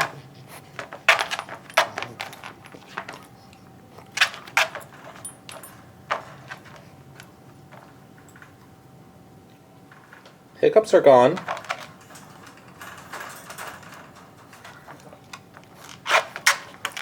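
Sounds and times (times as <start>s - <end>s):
light metallic jingles: 1.1s - 6.4s.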